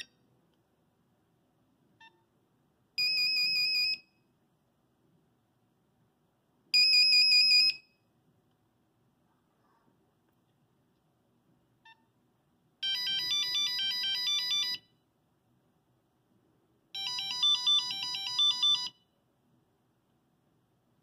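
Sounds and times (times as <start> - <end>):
beeping ringtone melody: 12.8 - 14.9, 17.0 - 19.0.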